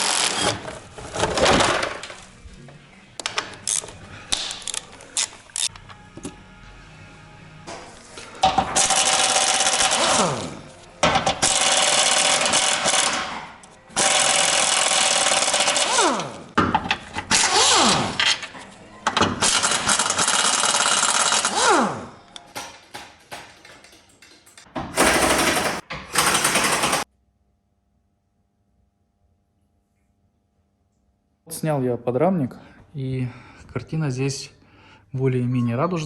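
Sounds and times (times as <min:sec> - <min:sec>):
impact wrench hammering: 0:22.5 - 0:27.1.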